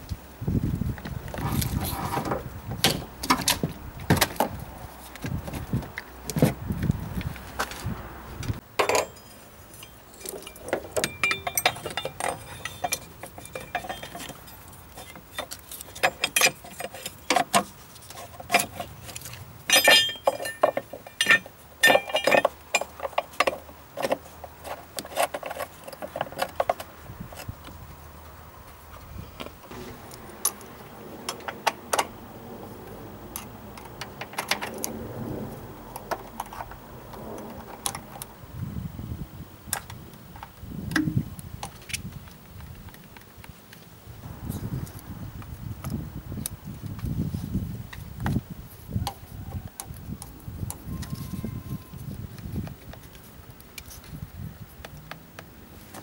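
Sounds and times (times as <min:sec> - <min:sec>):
small metallic clicks and clinks: 0:08.8 - 0:24.2.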